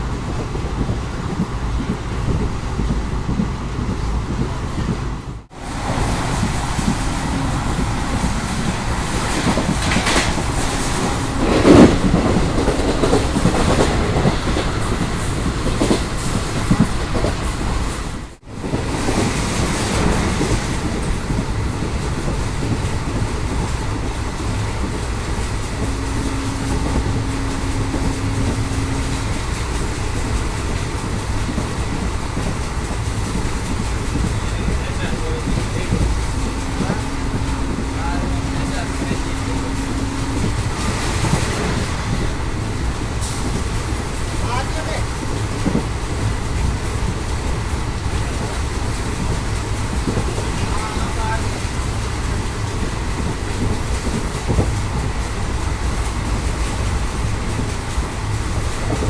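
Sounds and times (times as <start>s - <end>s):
train wheels rumbling on rails: 0.0s - 59.0s
loud clatter: 8.1s - 14.7s.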